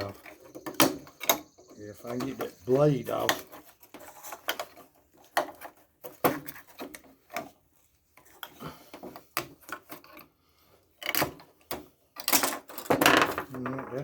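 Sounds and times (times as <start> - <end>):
fan blade clicks and scraping: 0.0 - 7.5.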